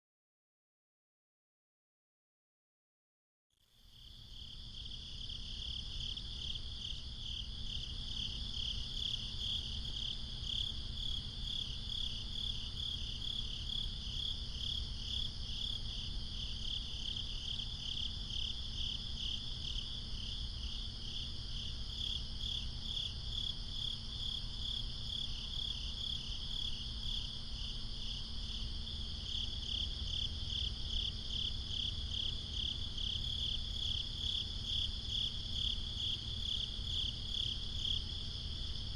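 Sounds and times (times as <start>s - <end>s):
crickets chirping: 3.7s - 38.9s.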